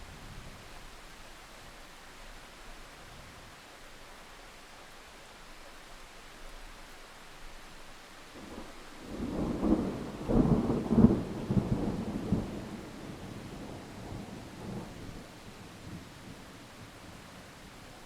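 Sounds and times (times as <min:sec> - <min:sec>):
steady rain: 0:00.0 - 0:18.0
thunder rumbling and cracking: 0:08.5 - 0:16.0.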